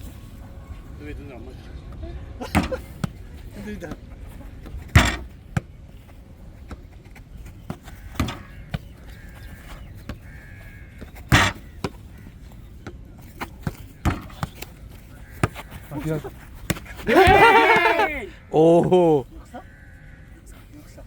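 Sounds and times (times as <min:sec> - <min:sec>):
ball thuds: 0:02.5 - 0:05.8, 0:06.6 - 0:08.9, 0:11.0 - 0:12.1, 0:12.8 - 0:15.8, 0:16.6 - 0:18.0.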